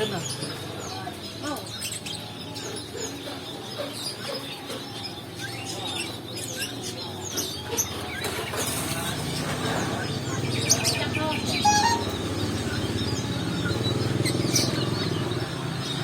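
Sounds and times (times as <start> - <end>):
high bird chirps and squeaks: 10.5 - 12.8.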